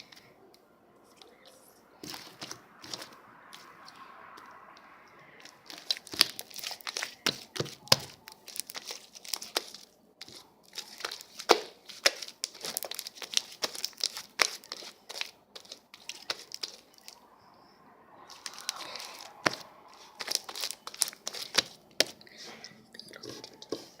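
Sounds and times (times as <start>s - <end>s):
slime squished crackling and popping: 5.4s - 17.2s, 18.3s - 22.2s.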